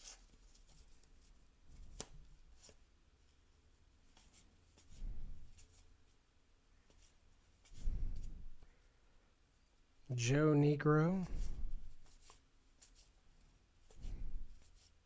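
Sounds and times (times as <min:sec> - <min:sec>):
cards flipped by hand: 0:01.8 - 0:02.8.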